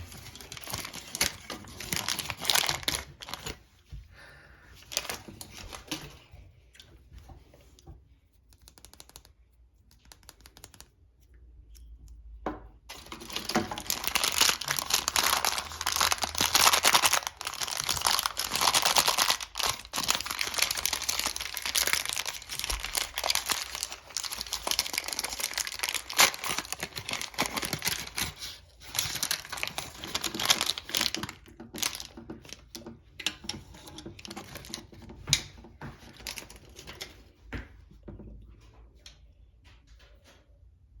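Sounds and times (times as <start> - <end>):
plastic packaging crinkling: 0.0 - 3.8, 4.8 - 6.2, 12.9 - 32.8, 33.4 - 35.0, 36.0 - 37.3.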